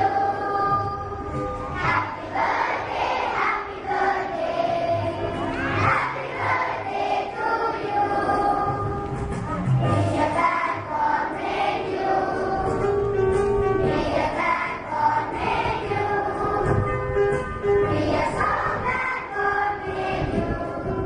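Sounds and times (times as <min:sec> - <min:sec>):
children singing in unison: 0:00.0 - 0:09.4, 0:10.0 - 0:13.1, 0:13.7 - 0:16.9, 0:17.9 - 0:21.0.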